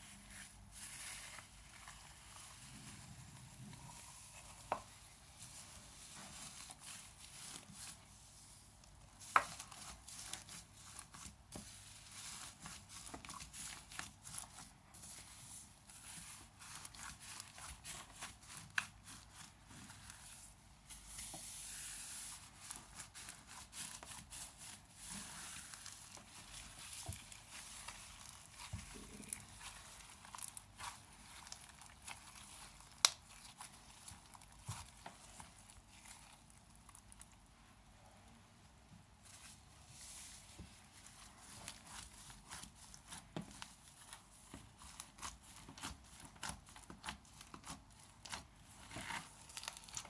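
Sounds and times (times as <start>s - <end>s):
slime squished by hand: 21.4s - 37.4s, 41.0s - 50.0s.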